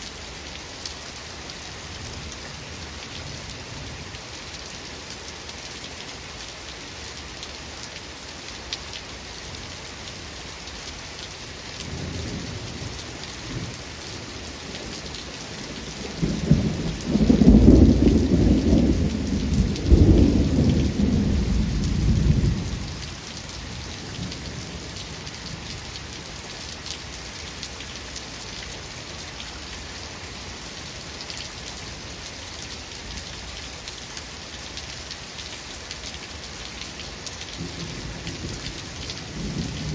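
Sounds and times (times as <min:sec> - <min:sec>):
rain falling: 0:00.0 - 0:39.9
thunder rumbling: 0:15.9 - 0:23.0.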